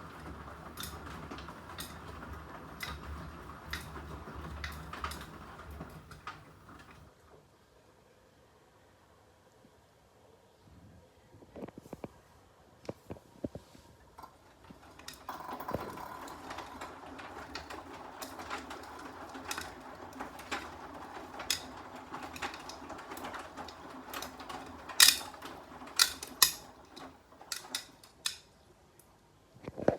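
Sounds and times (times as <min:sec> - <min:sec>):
washing machine clicks and knocks: 0:00.0 - 0:07.0, 0:14.2 - 0:28.4
washing machine humming: 0:00.0 - 0:07.4, 0:14.0 - 0:28.4.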